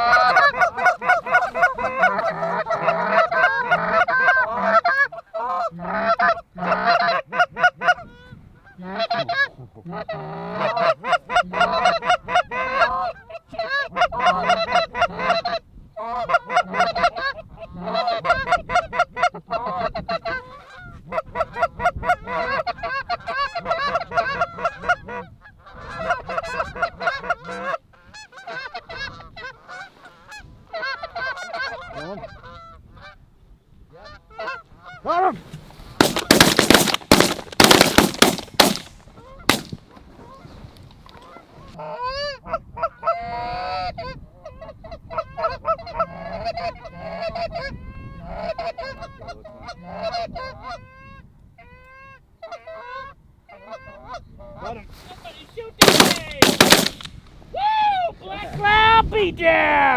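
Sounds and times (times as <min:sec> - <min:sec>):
geese honking and clucking: 0:00.0 - 0:33.2, 0:51.6 - 0:57.1.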